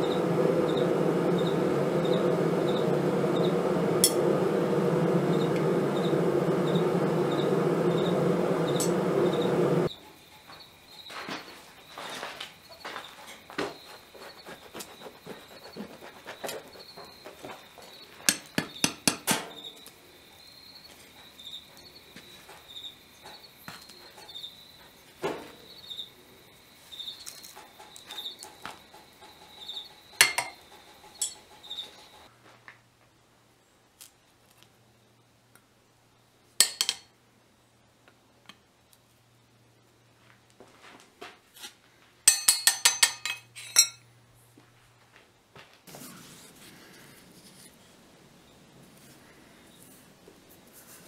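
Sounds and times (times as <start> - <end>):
faint low hum: 0.0 - 10.5
insect chirping: 5.3 - 32.3.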